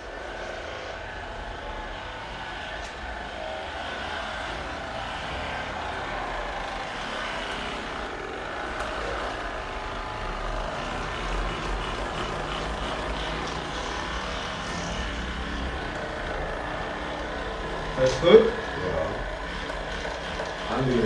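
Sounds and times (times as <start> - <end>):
low drone: 0.0 - 21.0
steady motor hum: 0.0 - 21.0.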